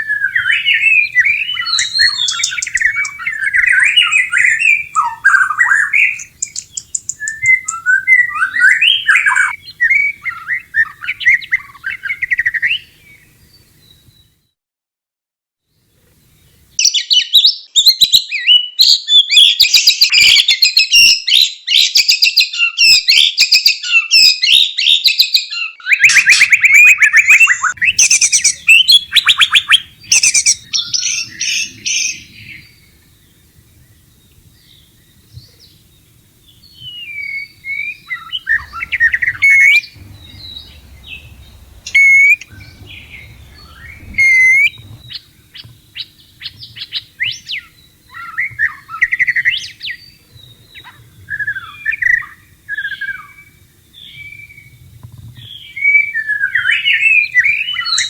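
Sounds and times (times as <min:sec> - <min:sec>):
bird whistled notes: 0:00.0 - 0:14.2, 0:25.9 - 0:54.7
bird singing trills: 0:00.0 - 0:14.3, 0:26.0 - 0:54.8, 0:55.4 - 0:58.0.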